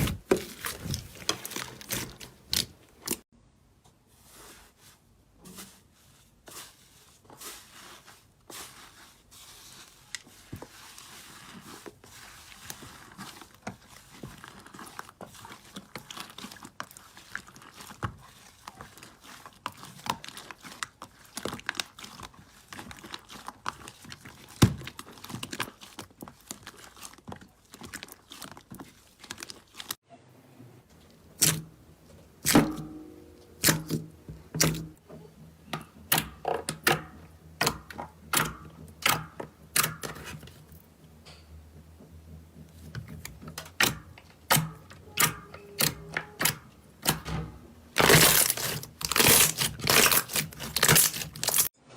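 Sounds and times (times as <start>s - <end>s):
slime squelching by hand: 0.0s - 3.2s, 5.5s - 30.0s, 31.0s - 35.0s, 47.9s - 51.8s.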